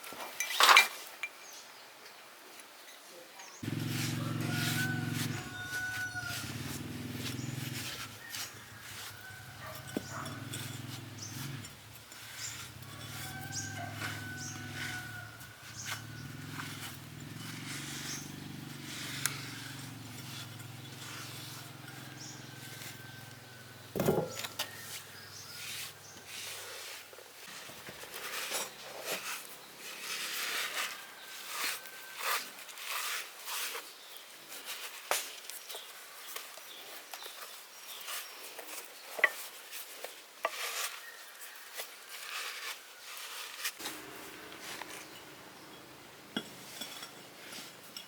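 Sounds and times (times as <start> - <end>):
hand tools clicking and scraping: 3.6 - 48.0
low hum: 43.8 - 47.7.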